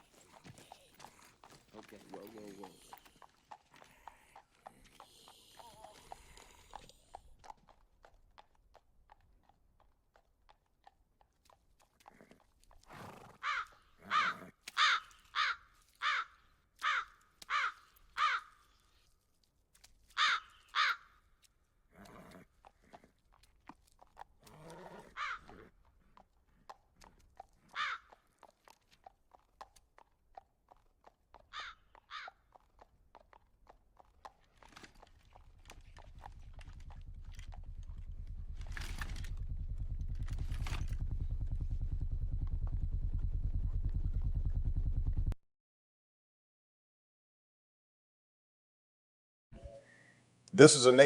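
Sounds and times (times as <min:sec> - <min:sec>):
horse hooves clip-clop: 0:00.0 - 0:16.2, 0:16.8 - 0:45.4
crow cawing: 0:13.4 - 0:18.7, 0:20.2 - 0:21.2, 0:25.1 - 0:25.5, 0:27.7 - 0:28.2, 0:31.5 - 0:32.4.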